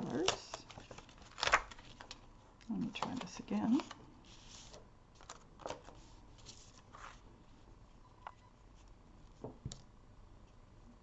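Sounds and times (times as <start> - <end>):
paper rustling: 0.3 - 2.3, 3.0 - 7.2.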